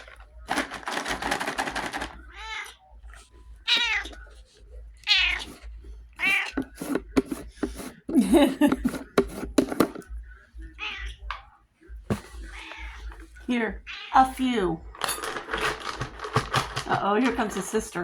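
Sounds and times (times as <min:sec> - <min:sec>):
cat meowing: 0:02.3 - 0:03.0, 0:03.6 - 0:04.3, 0:05.0 - 0:05.6, 0:06.2 - 0:06.6, 0:10.8 - 0:11.3, 0:12.4 - 0:13.1, 0:13.9 - 0:14.3.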